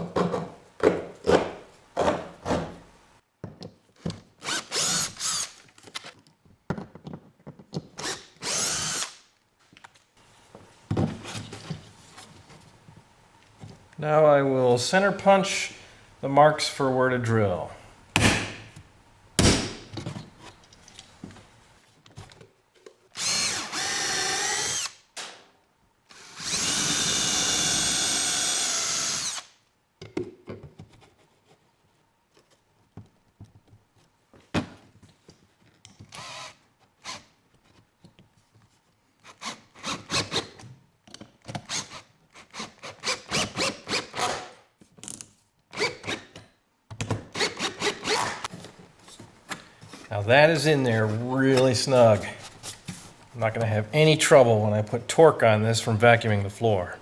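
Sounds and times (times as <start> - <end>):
power drill whining: 4.4 - 5.6, 8.0 - 9.2, 23.2 - 25.0, 26.1 - 29.5, 36.1 - 37.2
center punch knock: 18.2 - 18.7.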